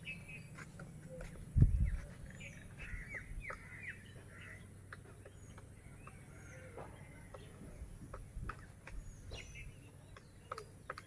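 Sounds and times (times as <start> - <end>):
small birds chirping: 0.0 - 11.0
woodpecker knocking on wood: 3.4 - 11.0.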